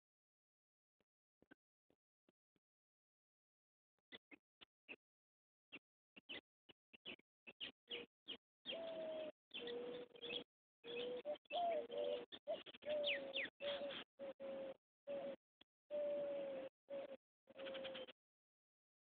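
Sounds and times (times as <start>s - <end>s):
birds chirping: 7.0s - 18.2s
birds cooing: 8.7s - 18.1s.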